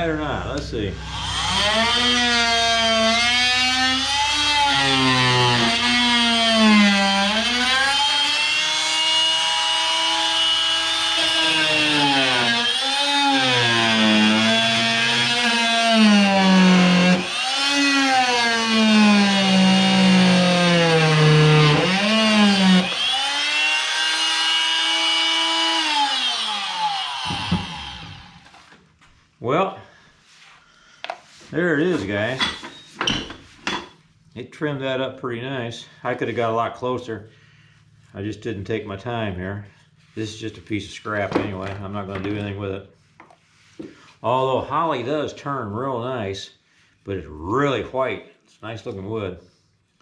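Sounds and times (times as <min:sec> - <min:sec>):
oscillating multi-tool cutting wood: 0:01.0 - 0:28.7.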